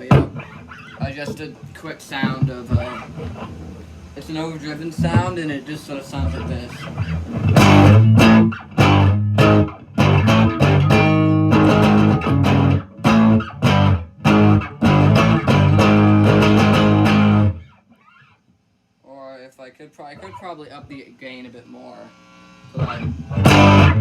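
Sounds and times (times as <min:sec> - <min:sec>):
overdriven electric guitar chords: 0:06.2 - 0:18.2, 0:22.6 - 0:24.0.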